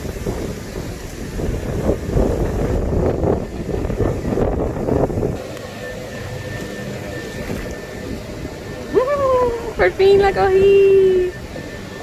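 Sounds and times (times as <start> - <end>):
wind buffeting microphone: 0.0 - 5.5, 6.5 - 12.0.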